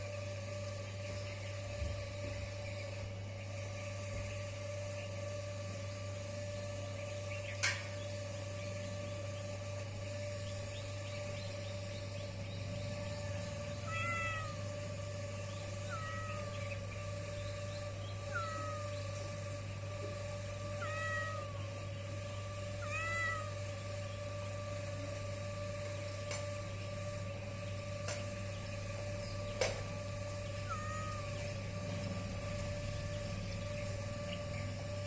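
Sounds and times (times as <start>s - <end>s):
electrical hum: 0.0s - 35.0s
kitten mewing: 13.7s - 14.7s, 15.8s - 16.6s, 18.3s - 18.9s, 20.8s - 21.6s, 22.8s - 23.6s, 30.7s - 31.5s.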